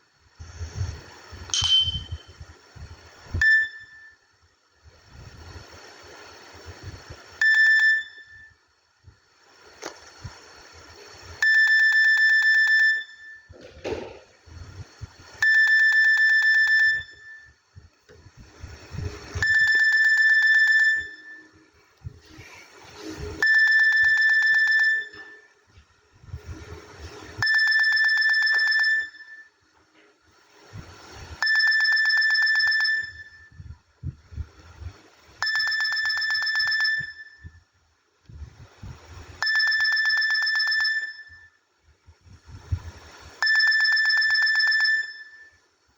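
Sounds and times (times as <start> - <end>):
phone ringtone trill: 19.4 - 21.5, 23.4 - 25.5, 27.4 - 29.5, 31.4 - 33.5, 35.4 - 37.5, 39.4 - 41.5, 43.4 - 45.6.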